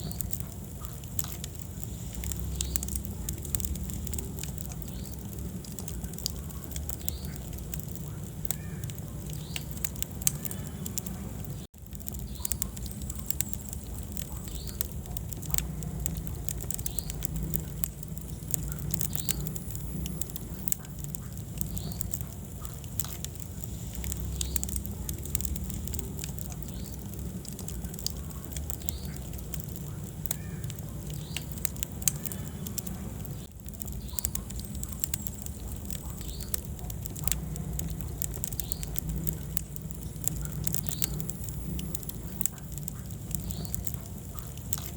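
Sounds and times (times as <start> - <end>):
wood fire crackling: 0.0 - 44.9.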